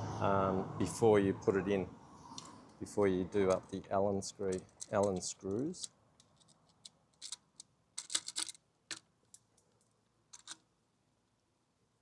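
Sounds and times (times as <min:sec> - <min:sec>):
small metal hardware clicking: 0:04.5 - 0:09.5, 0:10.4 - 0:10.6.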